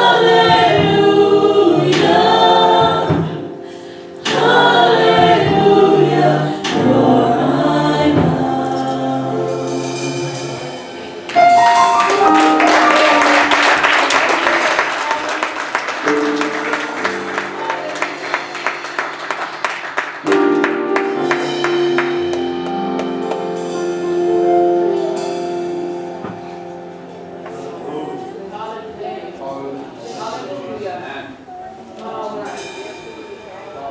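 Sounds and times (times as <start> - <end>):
live band instrumental: 0.0 - 29.3, 31.3 - 33.9
drums and cymbals: 8.0 - 12.3, 32.4 - 33.9.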